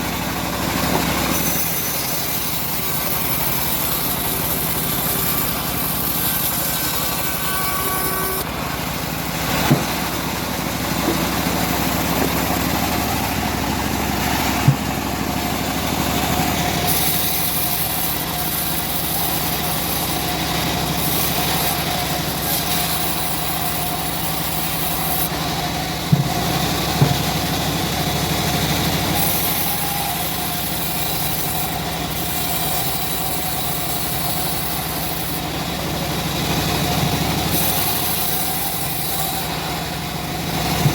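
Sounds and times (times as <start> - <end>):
bandsaw mill engine running: 0.0 - 40.9
short sharp knocks: 9.6 - 10.0.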